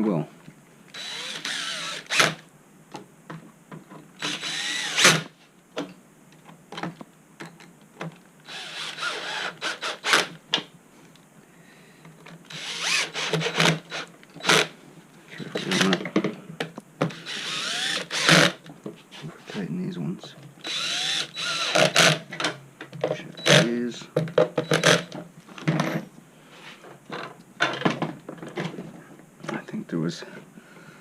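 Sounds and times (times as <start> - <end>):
cordless drill driving screws: 0.9 - 2.4, 4.2 - 5.3, 8.4 - 10.3, 12.5 - 14.7, 15.5 - 16.0, 17.1 - 18.6, 20.6 - 22.2.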